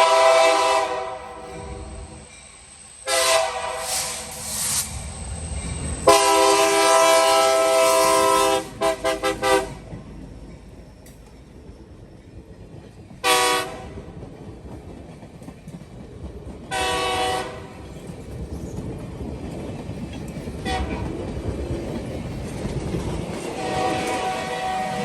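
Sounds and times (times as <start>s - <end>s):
train air horn blasts: 0.0s - 2.2s, 3.0s - 4.6s, 6.0s - 9.8s, 13.2s - 14.0s, 16.7s - 17.8s, 20.6s - 21.0s, 23.5s - 25.0s
train running rumble: 0.0s - 25.0s.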